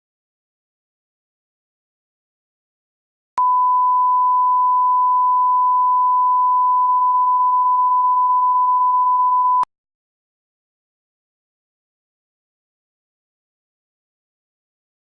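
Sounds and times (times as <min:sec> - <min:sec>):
electronic beep tone: 0:03.4 - 0:09.7.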